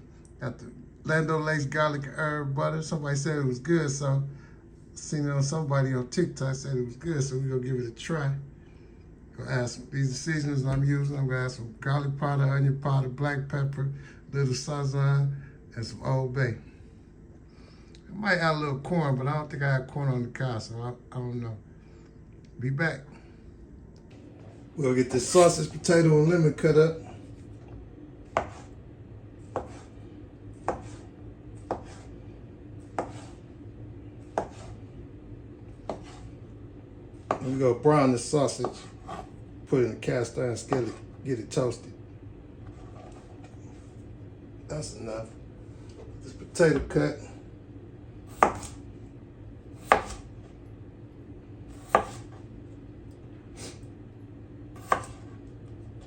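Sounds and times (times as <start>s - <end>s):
knife cutting on cutting board: 28.4s - 28.8s, 29.5s - 30.0s, 30.6s - 32.1s, 32.8s - 33.4s, 34.2s - 34.8s, 35.8s - 36.4s, 38.6s - 39.3s, 48.3s - 48.8s, 49.8s - 50.3s, 51.8s - 52.4s, 54.8s - 55.4s.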